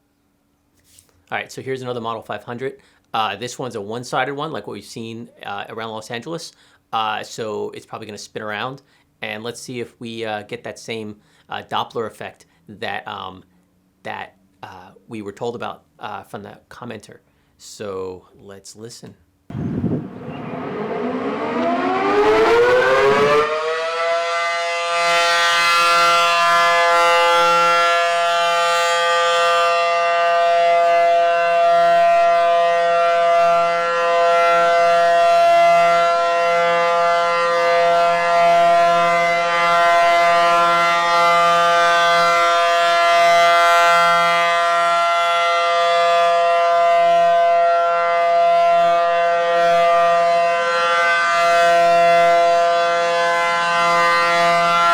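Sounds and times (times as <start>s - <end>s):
rotating air raid siren wailing: 19.5s - 54.9s.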